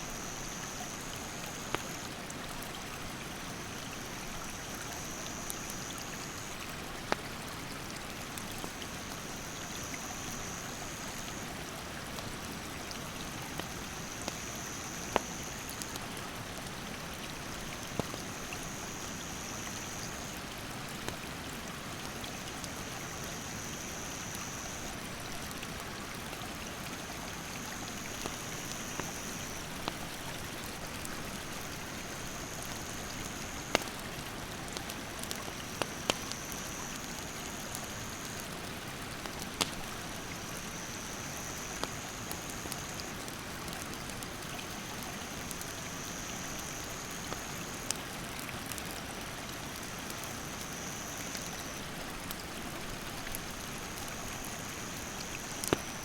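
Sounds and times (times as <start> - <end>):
campfire popping and crackling: 13.4 - 18.8, 27.6 - 48.9, 49.7 - 56.0
insect buzzing call: 23.2 - 24.9.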